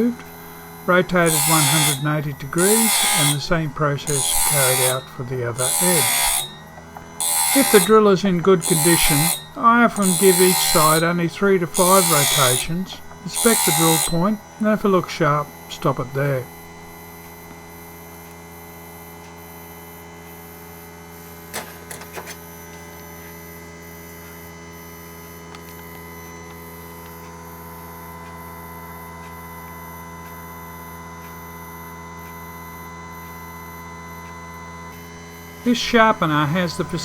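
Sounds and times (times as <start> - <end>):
drill bit grinding: 0.0 - 19.4, 35.6 - 37.0
grinder motor humming: 0.0 - 37.0.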